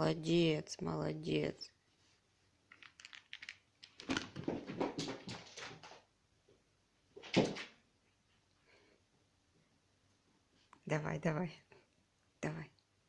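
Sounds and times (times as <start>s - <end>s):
cat scuffling and knocking: 4.0s - 6.1s.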